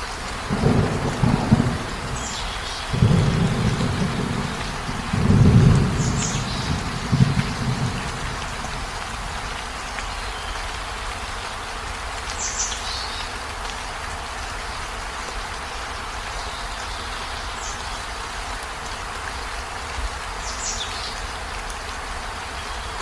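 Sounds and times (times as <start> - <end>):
heavy rain: 0.0 - 23.0
thunder rumbling: 0.4 - 9.8.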